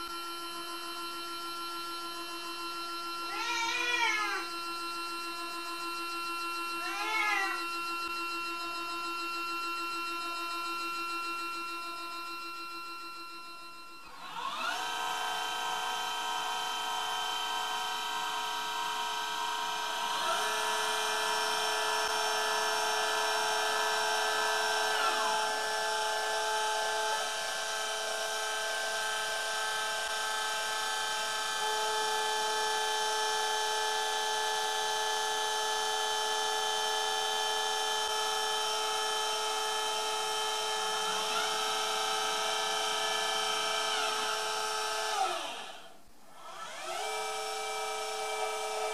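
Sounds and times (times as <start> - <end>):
motors whining: 2.8 - 16.5, 40.6 - 48.9.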